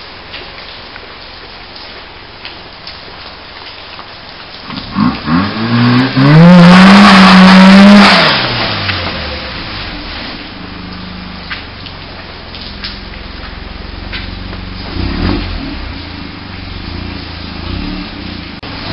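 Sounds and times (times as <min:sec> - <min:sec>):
rotary engine idling and revving: 0:04.7 - 0:18.9.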